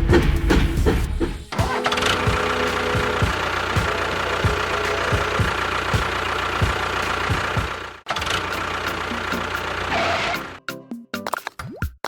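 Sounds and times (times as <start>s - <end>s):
repeated knocks: 0.0s - 7.8s
motor running steadily: 1.8s - 9.9s.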